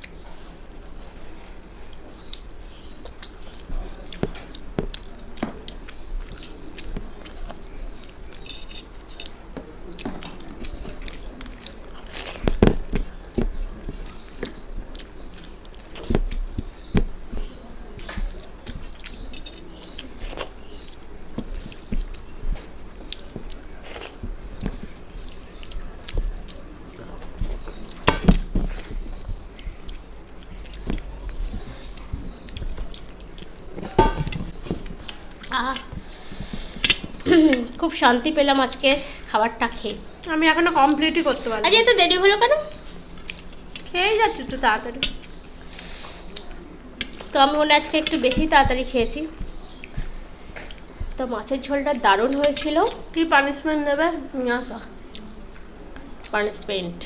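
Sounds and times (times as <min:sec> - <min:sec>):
chewing and mouth noises: 0:00.0 - 0:37.8, 0:42.6 - 0:43.9, 0:44.5 - 0:48.6, 0:54.9 - 0:56.6
utensils clinking against plates: 0:33.5 - 0:37.7.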